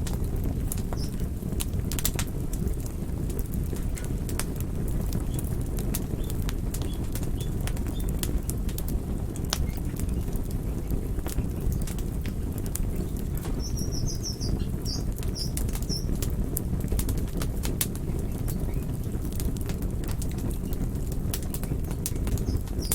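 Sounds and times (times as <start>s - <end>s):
campfire crackling and popping: 0.0s - 22.9s
fire low rush: 0.0s - 22.9s
high bird chirps: 13.0s - 16.2s.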